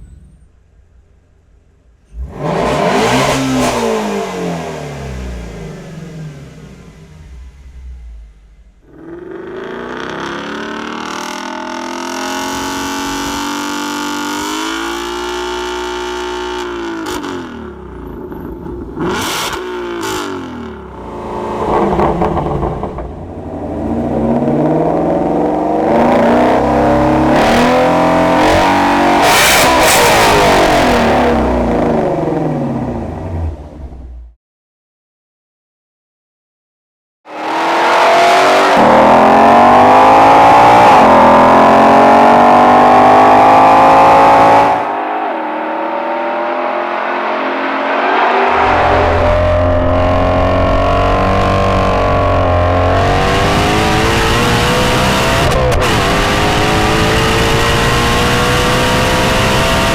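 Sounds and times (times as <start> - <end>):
car engine revving: 1.9 - 34.1, 37.3 - 59.9
exhaust cracks: 16.5 - 26.7, 48.4 - 57.1.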